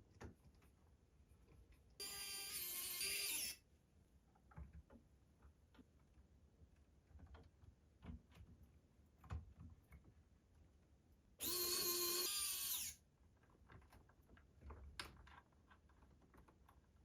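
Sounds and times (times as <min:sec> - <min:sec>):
electric power driver whining: 0:02.0 - 0:03.6, 0:11.4 - 0:13.0.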